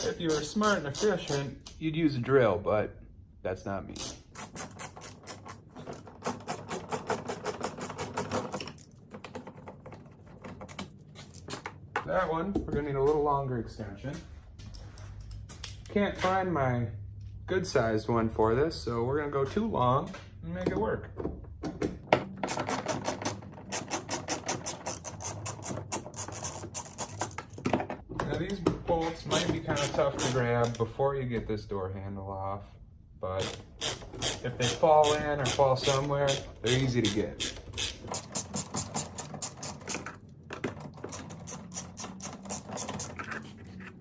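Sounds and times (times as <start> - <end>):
hand ratchet clicking: 33.4 - 40.1, 41.1 - 43.3.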